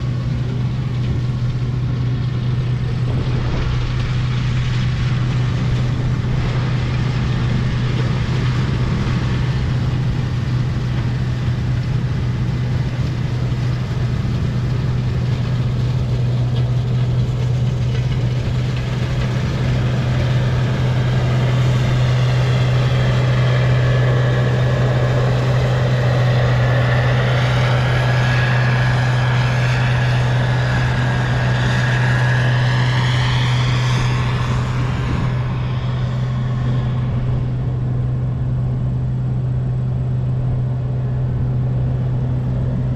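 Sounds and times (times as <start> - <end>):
farm machine engine droning: 0.0 - 42.9
faint high whine: 18.4 - 42.9.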